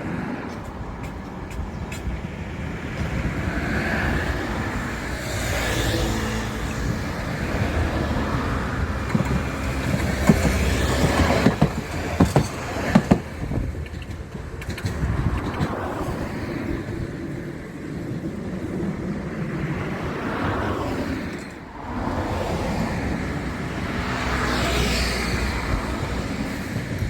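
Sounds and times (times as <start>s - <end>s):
rail vehicle rumble: 0.0s - 27.0s
wheel clacks over rail joints: 8.5s - 16.3s.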